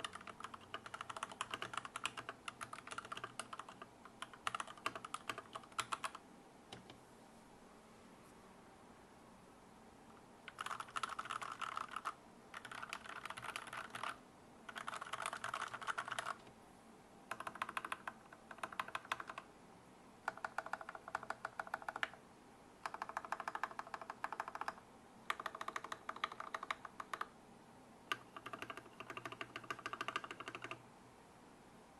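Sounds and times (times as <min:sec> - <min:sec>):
fast typing on mechanical keyboard: 0:00.0 - 0:06.2, 0:10.5 - 0:16.4, 0:17.3 - 0:19.5, 0:20.3 - 0:22.2, 0:22.8 - 0:27.3, 0:28.1 - 0:30.8.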